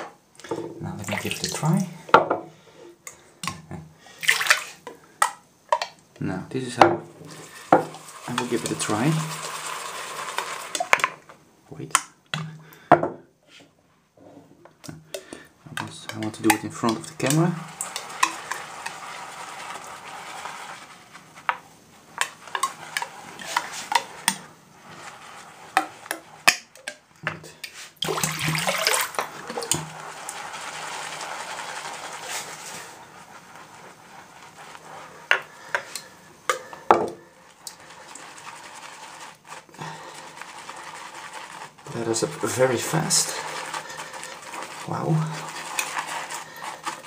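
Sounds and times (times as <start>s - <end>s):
shaving brush swishing in bowl: 7.2s - 11.0s, 15.7s - 26.5s, 27.8s - 47.0s.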